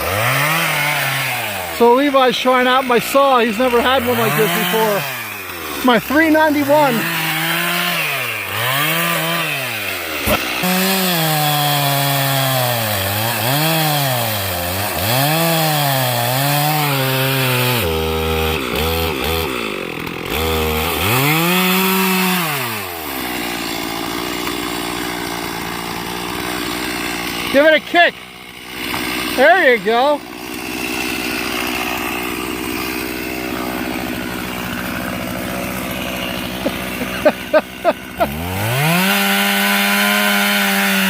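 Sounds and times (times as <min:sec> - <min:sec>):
chainsaw cutting wood: 0:00.0 - 0:41.0
chainsaw idling: 0:00.0 - 0:41.0.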